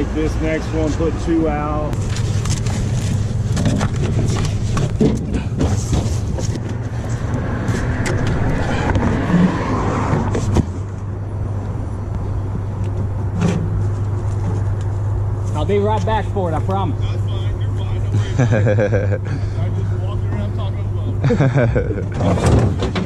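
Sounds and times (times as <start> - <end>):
vehicle engine running: 0.0 - 22.4
knocks and clatter: 2.0 - 9.5, 22.0 - 23.0.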